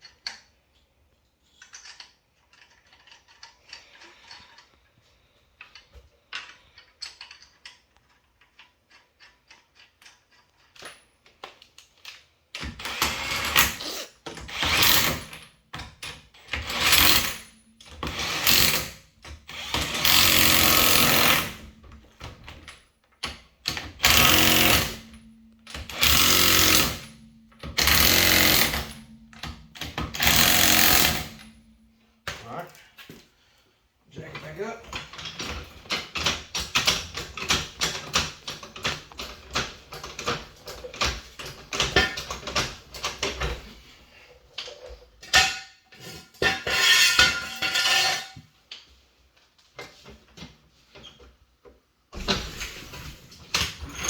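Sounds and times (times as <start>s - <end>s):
lug nuts clicking and rattling: 1.5s - 4.8s, 5.6s - 31.7s
impact wrench hammering: 14.4s - 15.4s, 16.4s - 32.4s.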